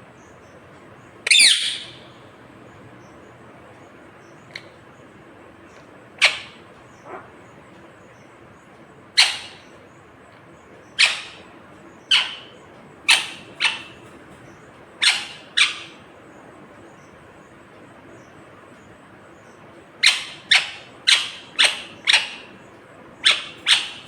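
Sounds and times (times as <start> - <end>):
parakeet sharp calls: 1.2 - 2.2, 6.2 - 7.5, 9.2 - 9.7, 10.9 - 14.1, 15.0 - 16.0, 20.0 - 24.0.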